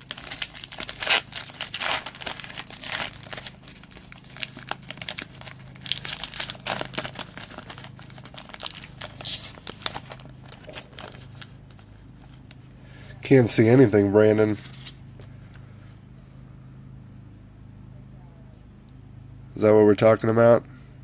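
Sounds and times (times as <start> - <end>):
plastic wrapping crinkling and tearing: 0.0 - 12.6
faint low hum: 0.0 - 21.0.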